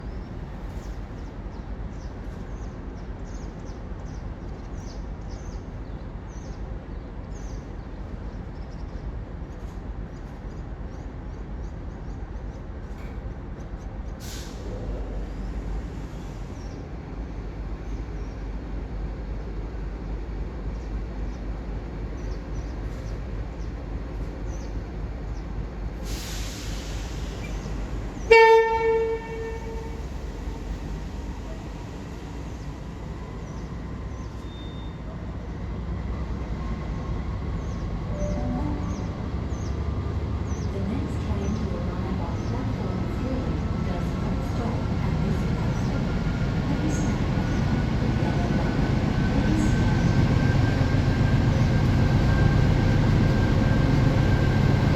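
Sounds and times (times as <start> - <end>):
diesel train rumble: 0.0 - 54.9
short hisses: 26.0 - 27.7.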